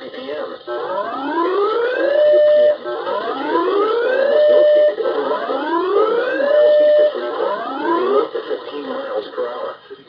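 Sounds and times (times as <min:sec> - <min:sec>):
alarm siren whooping: 0:00.8 - 0:08.3.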